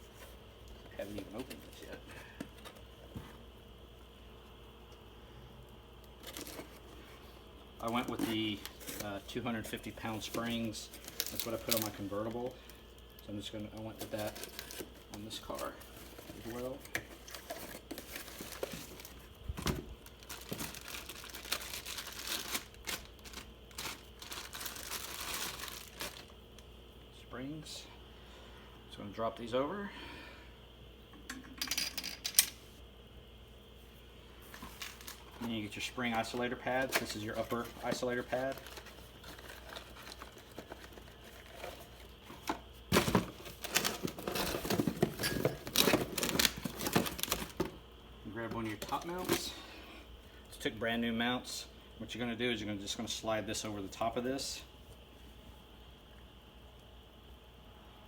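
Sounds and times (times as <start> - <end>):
packaging crinkling and tearing: 6.2 - 6.9, 10.2 - 19.4, 20.0 - 26.3, 34.5 - 35.5, 36.1 - 47.7.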